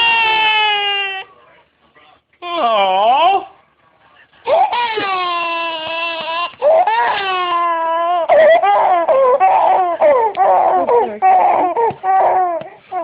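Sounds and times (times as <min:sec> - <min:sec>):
baby crying: 0:00.0 - 0:01.3, 0:04.5 - 0:13.0.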